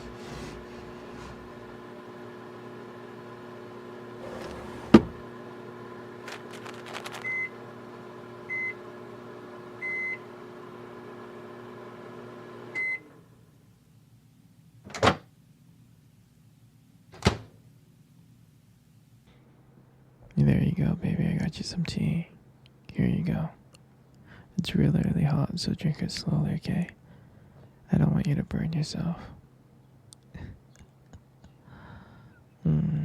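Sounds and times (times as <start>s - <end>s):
microwave oven humming: 0.0s - 25.9s, 26.6s - 33.0s
microwave beeps: 7.2s - 7.6s, 8.4s - 8.9s, 9.8s - 10.3s, 12.7s - 13.2s.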